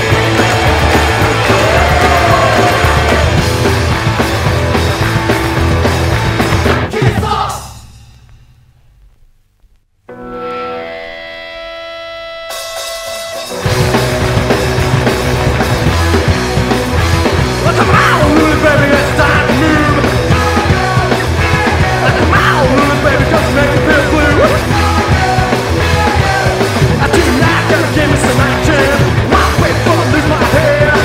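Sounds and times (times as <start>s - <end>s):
punk rock band playing: 0.0s - 8.4s, 10.1s - 31.0s
person singing: 17.6s - 31.0s.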